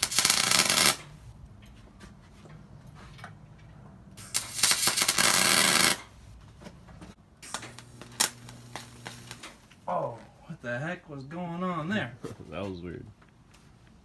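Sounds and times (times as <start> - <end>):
welding arc crackling: 0.0 - 1.2, 4.2 - 6.1, 7.4 - 9.8.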